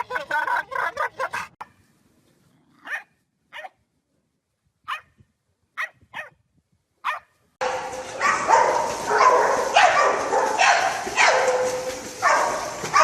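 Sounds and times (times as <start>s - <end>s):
dog barking and yipping: 2.8s - 3.8s, 4.9s - 5.1s, 5.8s - 6.4s, 7.0s - 13.0s.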